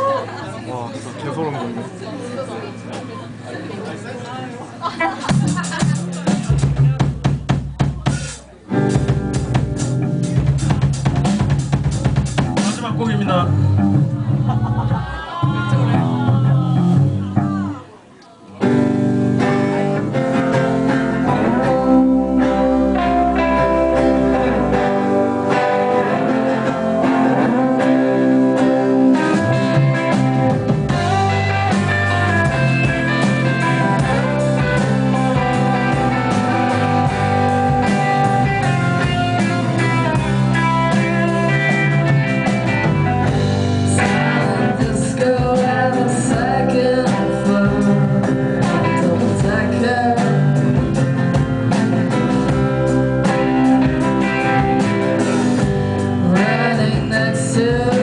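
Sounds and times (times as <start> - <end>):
guitar: 0.0 - 58.0
bass line: 5.3 - 17.9, 18.6 - 58.0
person singing: 21.1 - 29.9, 43.9 - 50.9, 56.2 - 58.0.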